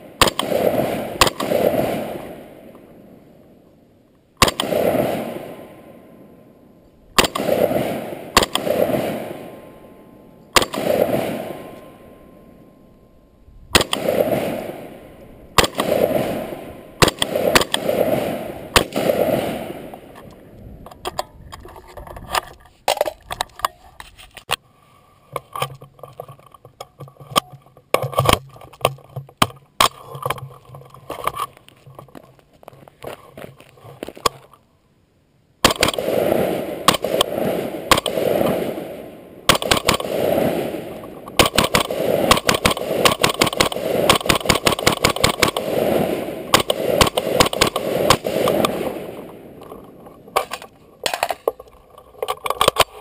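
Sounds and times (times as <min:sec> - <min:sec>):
rifle shots with echo: 0:00.0 - 0:03.6, 0:04.4 - 0:12.8, 0:13.7 - 0:20.5, 0:35.6 - 0:51.3
rapid small clicks and knocks: 0:25.3 - 0:34.6, 0:41.0 - 0:45.7, 0:46.6 - 0:53.0.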